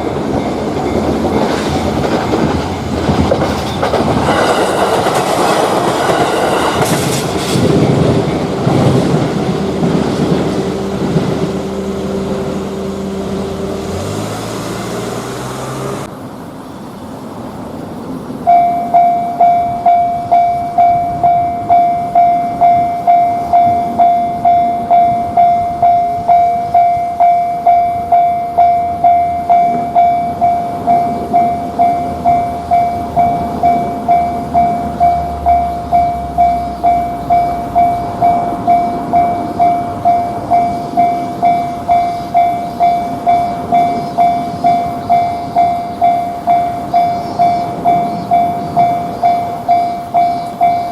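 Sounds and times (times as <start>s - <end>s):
railroad crossing alarm ringing: 0.0s - 16.0s, 18.4s - 50.9s.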